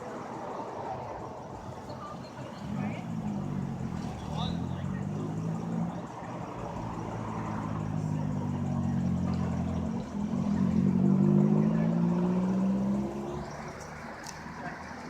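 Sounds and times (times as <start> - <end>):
car engine running: 2.6 - 14.2.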